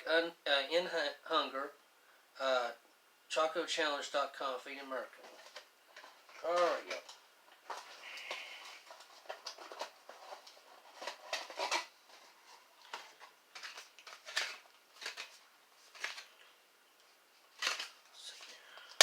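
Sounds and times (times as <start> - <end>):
packaging rustling and clicking: 5.2 - 16.4, 17.4 - 19.0.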